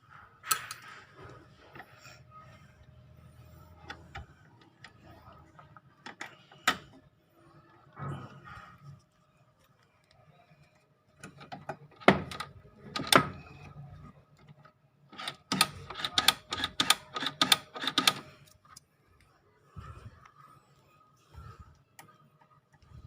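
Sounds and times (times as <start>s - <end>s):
clicks of plastic and metal parts: 9.6s - 18.8s.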